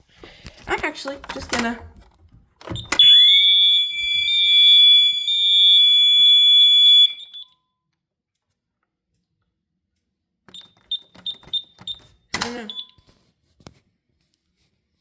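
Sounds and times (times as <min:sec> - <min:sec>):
electronic alarm siren: 0:02.8 - 0:07.6.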